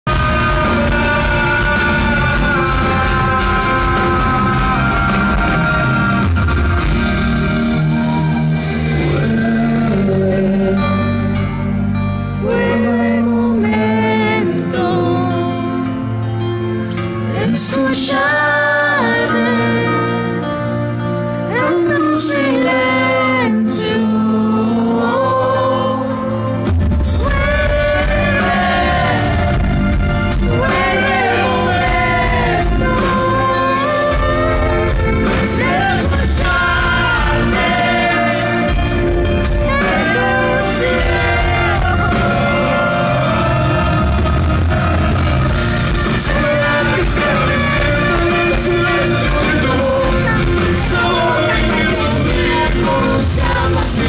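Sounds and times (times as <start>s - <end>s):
bass and percussion: 0.0s - 13.0s, 26.5s - 54.0s
live rock band playing: 0.0s - 54.0s
person singing: 0.1s - 16.2s, 17.2s - 20.7s, 21.4s - 54.0s.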